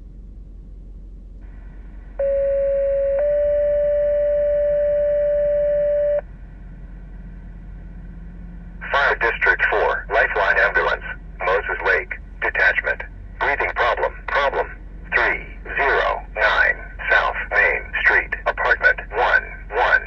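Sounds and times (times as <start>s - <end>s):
two-tone dispatch page: 2.2s - 6.2s, 8.8s - 20.0s
radio hum and hiss: 8.8s - 20.0s.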